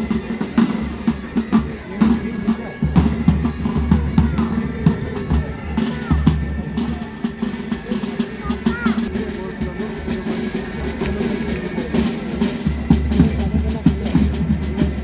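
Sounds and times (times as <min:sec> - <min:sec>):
heavy bass drum: 0:00.0 - 0:10.4
steady held tones: 0:00.0 - 0:10.9.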